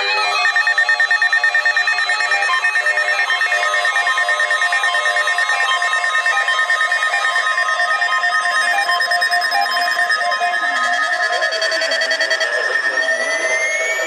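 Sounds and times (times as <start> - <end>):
weather radio alert beeps: 9.2 - 14.0.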